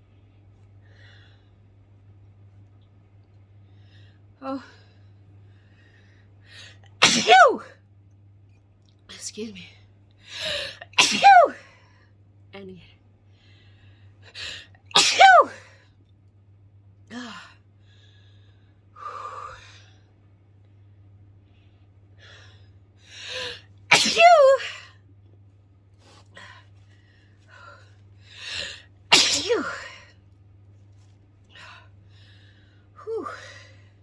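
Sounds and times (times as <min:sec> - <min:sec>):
faint low hum: 0:00.0 - 0:34.0
woman sneezing: 0:07.0 - 0:07.7, 0:10.9 - 0:11.6, 0:14.9 - 0:15.6, 0:23.9 - 0:24.9, 0:29.1 - 0:30.0.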